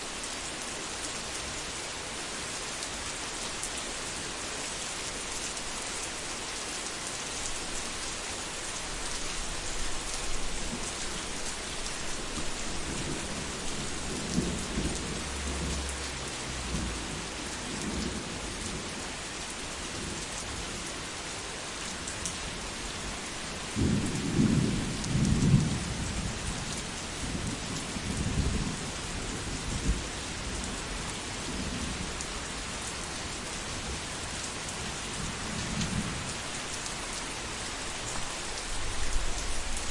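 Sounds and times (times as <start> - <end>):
steady rain hiss: 0.0 - 39.9
rolling thunder: 23.8 - 26.2.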